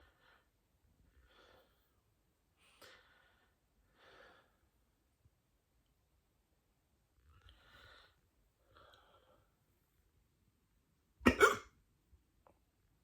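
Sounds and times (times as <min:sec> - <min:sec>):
soft breathing: 0:00.0 - 0:04.8, 0:07.2 - 0:09.7
sharp hiccup: 0:11.3 - 0:11.7.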